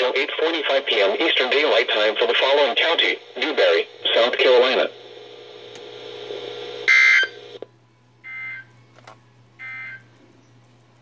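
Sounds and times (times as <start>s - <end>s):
radio hiss and hum: 0.0s - 7.7s.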